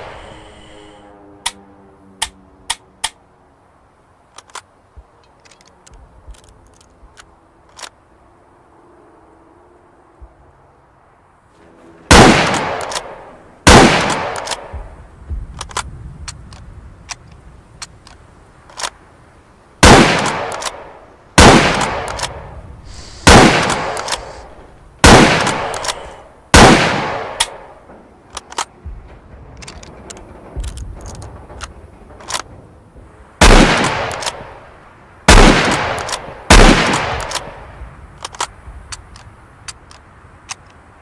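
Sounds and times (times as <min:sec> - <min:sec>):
rifle shots with echo: 0:12.1 - 0:14.9, 0:19.8 - 0:22.4, 0:23.2 - 0:24.4, 0:25.0 - 0:27.7, 0:33.4 - 0:34.6, 0:35.3 - 0:37.6
light clicks: 0:38.1 - 0:40.8.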